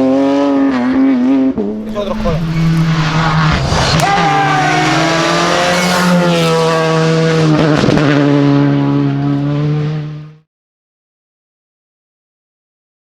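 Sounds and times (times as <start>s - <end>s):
rally car engine revving: 1.8s - 10.4s.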